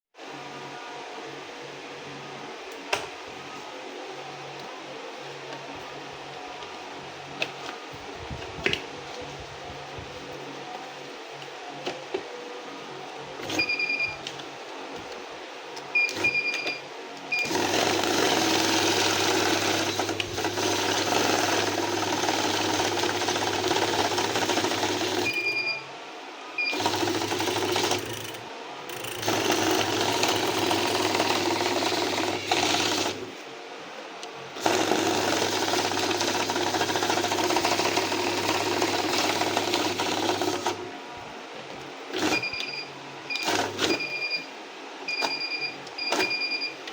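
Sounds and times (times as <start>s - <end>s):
banknote counting machine whirring: 16.0s - 25.7s, 26.6s - 33.4s, 34.6s - 40.9s, 42.1s - 44.3s, 45.1s - 46.7s.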